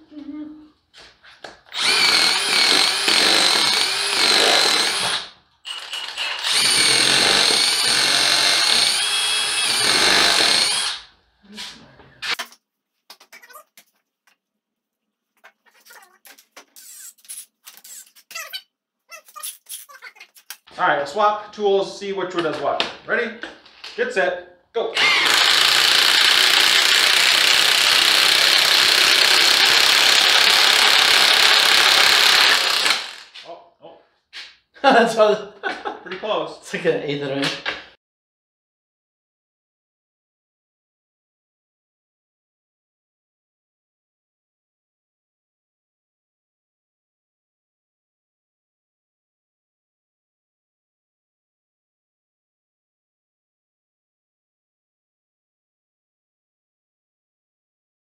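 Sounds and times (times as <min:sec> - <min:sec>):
impact wrench whining: 0:01.7 - 0:11.1, 0:25.0 - 0:33.4.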